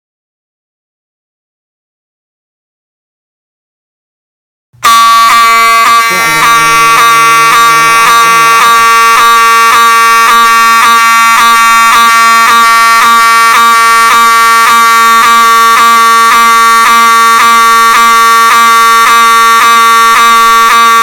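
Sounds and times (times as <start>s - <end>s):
fire alarm pulsing tone: 4.8s - 21.0s.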